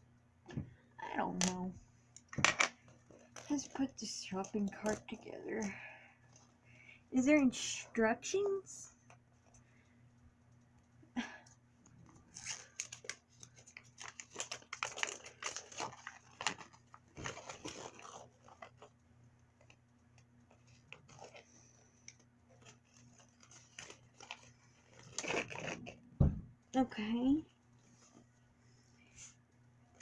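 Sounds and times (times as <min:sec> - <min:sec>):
plastic packaging crinkling: 0:02.3 - 0:06.5, 0:12.3 - 0:19.0, 0:20.5 - 0:26.0.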